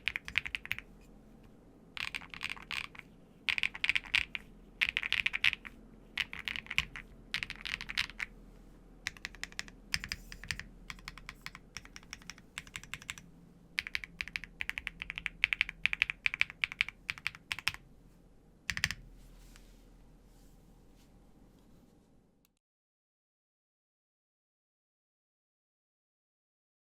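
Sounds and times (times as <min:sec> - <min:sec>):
mechanical keyboard typing: 0:00.0 - 0:00.9, 0:02.0 - 0:08.3, 0:09.0 - 0:17.8, 0:18.7 - 0:19.0.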